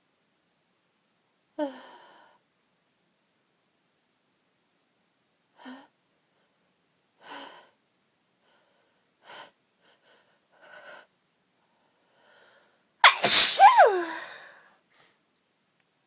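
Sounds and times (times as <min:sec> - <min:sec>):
faint gasping in-breaths: 0:13.0 - 0:14.5.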